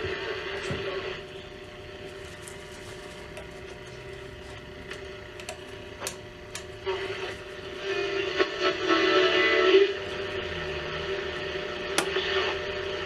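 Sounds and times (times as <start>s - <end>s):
sharp static crackles: 0.0s - 13.0s
static hiss: 5.0s - 13.0s.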